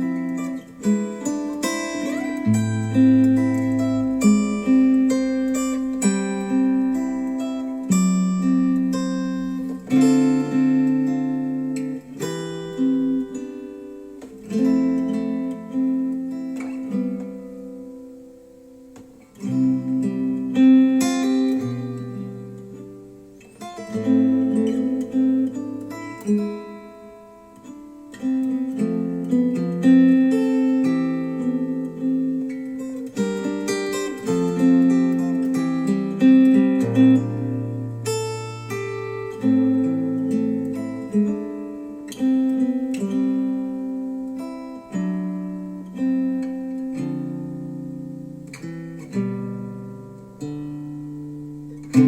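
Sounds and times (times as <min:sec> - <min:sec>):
acoustic guitar music over speakers: 0:00.0 - 0:52.0.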